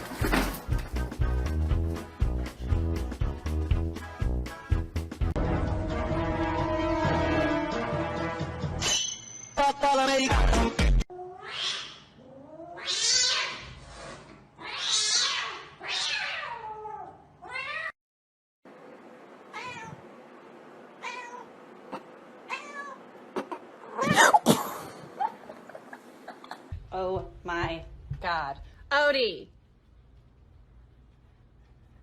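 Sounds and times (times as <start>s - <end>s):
cat meowing: 11.1s - 13.7s, 14.6s - 18.0s, 19.5s - 20.0s, 21.0s - 21.5s, 22.5s - 23.0s.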